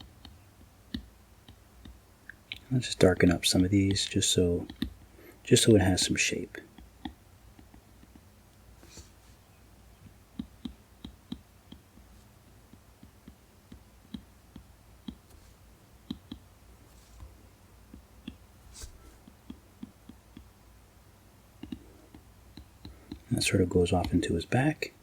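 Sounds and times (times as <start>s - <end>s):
stylus tapping on tablet screen: 0.0s - 2.7s, 6.7s - 9.1s, 10.0s - 20.6s, 21.6s - 23.3s.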